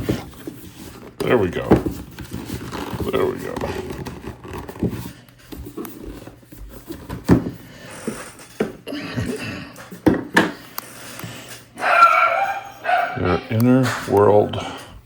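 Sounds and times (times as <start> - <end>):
cardboard packaging knocks and rustles: 0.0 - 7.6.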